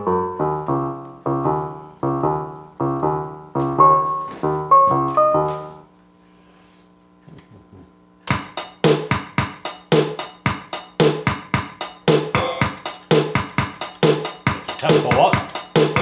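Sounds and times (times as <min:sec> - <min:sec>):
faint hum: 0:05.8 - 0:08.3
drum machine rhythm: 0:08.3 - 0:16.0.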